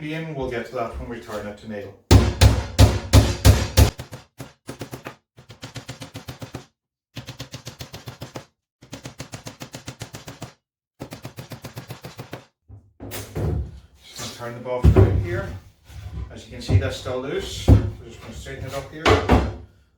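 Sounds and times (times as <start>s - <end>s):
hammer driving nails into wood: 2.1s - 12.5s.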